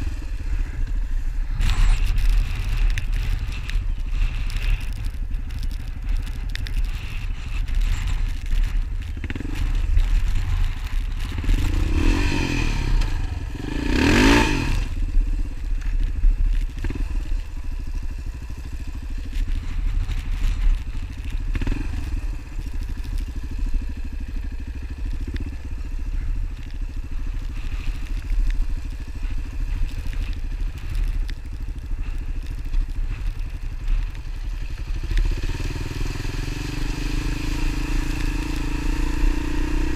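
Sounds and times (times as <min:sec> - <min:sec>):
engine low rumble: 0:00.0 - 0:39.9
louder engine passing: 0:11.4 - 0:14.9.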